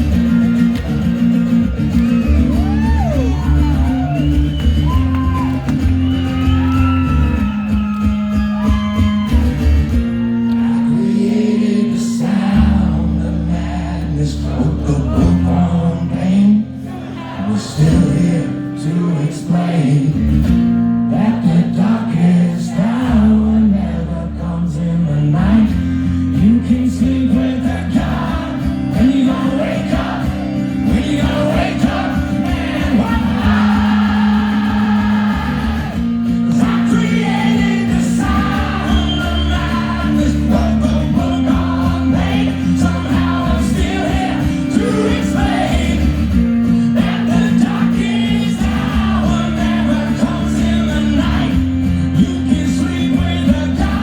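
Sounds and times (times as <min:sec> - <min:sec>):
acoustic guitar: 0:00.0 - 0:54.0
man singing: 0:10.7 - 0:20.4, 0:21.1 - 0:35.9, 0:36.5 - 0:54.0.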